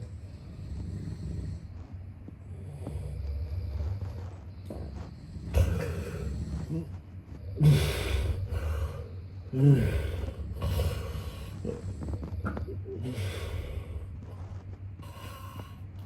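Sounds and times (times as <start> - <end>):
man snoring: 0.0 - 1.8, 2.5 - 16.0.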